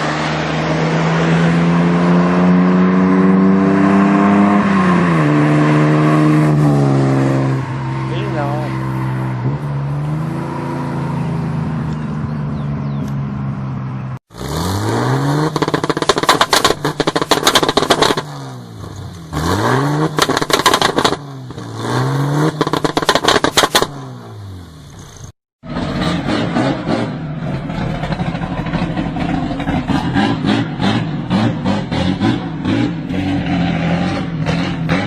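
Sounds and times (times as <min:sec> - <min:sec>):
car engine idling and revving: 0:00.0 - 0:35.0
exhaust crackling rattle: 0:15.4 - 0:19.2, 0:22.5 - 0:24.0, 0:27.2 - 0:31.3.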